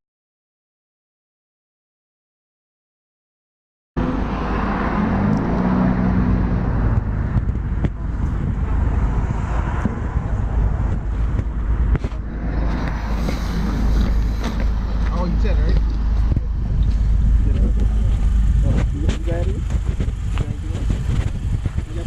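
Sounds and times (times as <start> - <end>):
car engine and road noise: 4.0 - 22.0.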